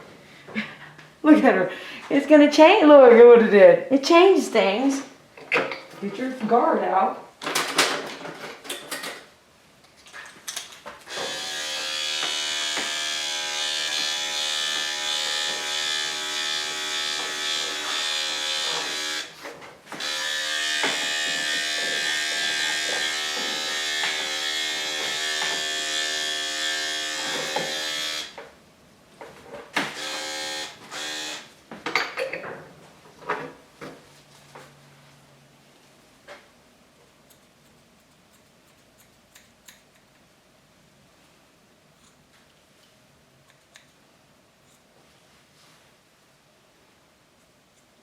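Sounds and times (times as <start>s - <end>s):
electric hair clippers buzzing: 11.1s - 28.4s, 29.8s - 31.5s.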